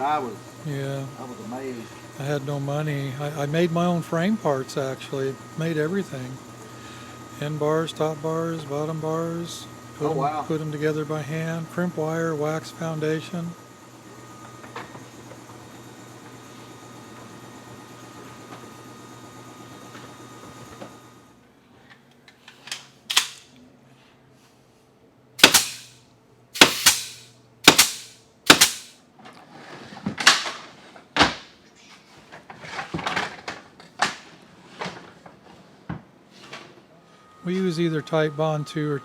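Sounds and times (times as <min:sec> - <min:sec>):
steady hum: 0:00.0 - 0:16.8, 0:23.1 - 0:23.5, 0:25.4 - 0:29.0
staple gun shots: 0:23.1 - 0:23.5, 0:25.4 - 0:26.0, 0:26.6 - 0:28.9
brief hiss or rattle: 0:26.6 - 0:28.9.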